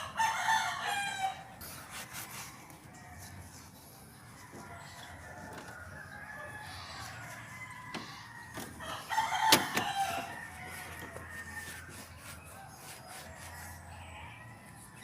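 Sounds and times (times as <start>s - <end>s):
rooster crowing: 0.0s - 1.5s, 4.4s - 14.6s.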